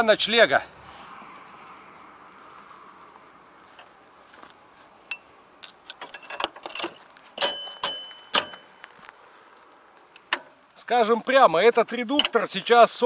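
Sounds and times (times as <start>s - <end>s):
crickets chirring: 0.0s - 13.0s
metallic clinks of hand tools: 5.1s - 8.8s.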